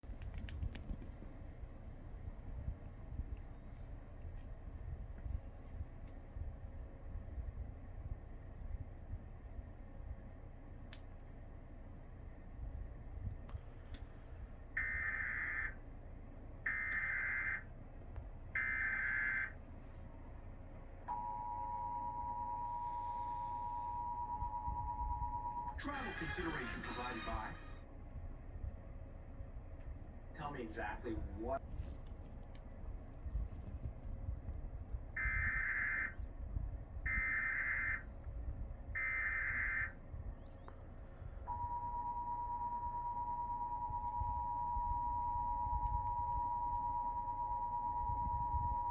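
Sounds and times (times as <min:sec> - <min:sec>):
two-tone alert signal: 0:21.1 - 0:27.5, 0:41.5 - 0:48.9.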